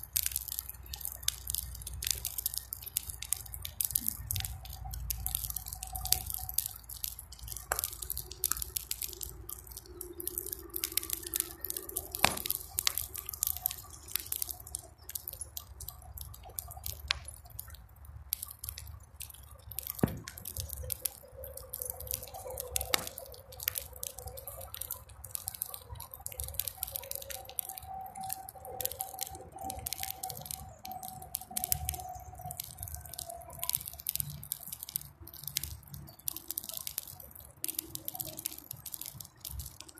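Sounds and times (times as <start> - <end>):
bonfire crackling and popping: 0.0 - 39.9
faint wavering whistling tones: 19.6 - 39.3.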